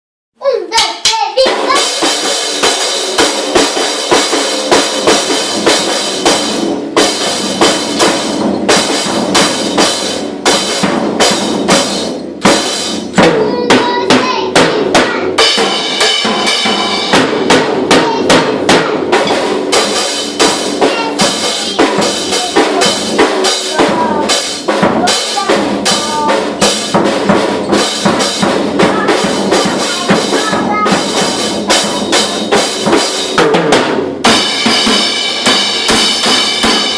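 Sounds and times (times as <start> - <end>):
drum kit played unevenly: 1.4 - 36.9.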